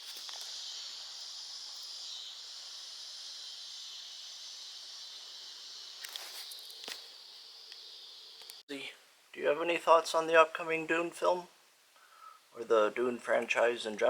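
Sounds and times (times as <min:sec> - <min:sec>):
insect chorus: 0:00.0 - 0:08.6
faint clicks: 0:08.4 - 0:08.6.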